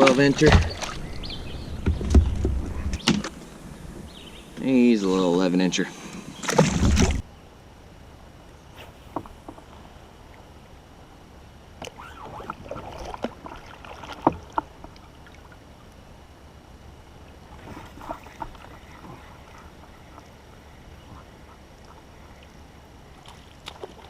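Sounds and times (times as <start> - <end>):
light water sounds: 0.0 - 24.0
knocks and clicks on kayak: 1.7 - 4.7.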